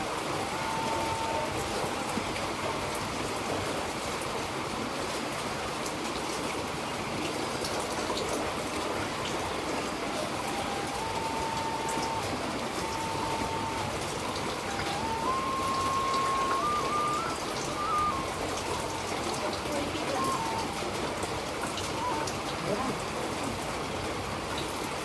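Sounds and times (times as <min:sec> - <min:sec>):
steady water noise: 0:00.0 - 0:25.0
faint held tones: 0:10.3 - 0:20.8.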